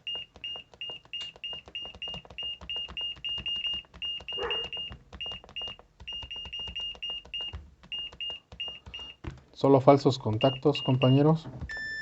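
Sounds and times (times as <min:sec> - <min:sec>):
rapid high buzzer beeps: 0:00.0 - 0:09.2, 0:10.4 - 0:12.0
sharp clicks: 0:00.0 - 0:09.2.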